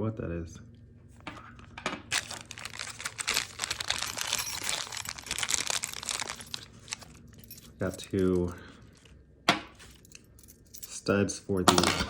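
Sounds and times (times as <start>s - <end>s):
plastic bag crinkling: 1.6s - 9.1s.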